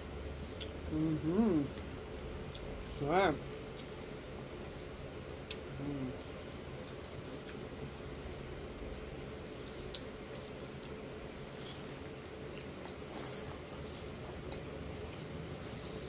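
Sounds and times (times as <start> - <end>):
wet mouth eating sounds: 9.6 - 15.8.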